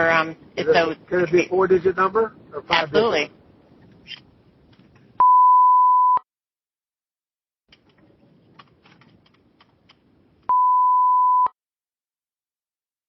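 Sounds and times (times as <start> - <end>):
loud pure beeps: 5.2 - 6.2, 10.5 - 11.6.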